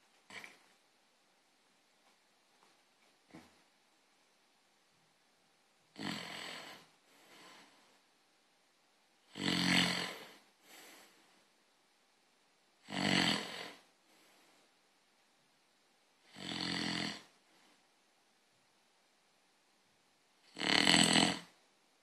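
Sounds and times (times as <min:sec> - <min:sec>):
person snoring: 0:05.9 - 0:06.9, 0:09.3 - 0:10.5, 0:12.8 - 0:13.9, 0:16.3 - 0:17.4, 0:20.5 - 0:21.6
faint breath out: 0:06.5 - 0:08.0, 0:10.0 - 0:11.5.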